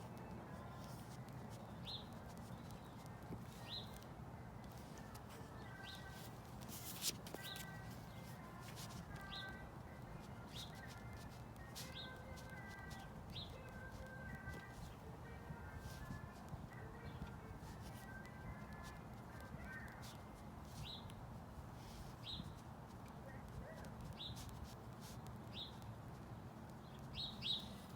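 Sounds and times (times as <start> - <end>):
birds whistling steady notes: 0.7 - 6.3, 6.9 - 20.2, 20.8 - 21.1, 21.8 - 22.6, 24.2 - 24.4, 25.5 - 25.8, 26.8 - 27.9.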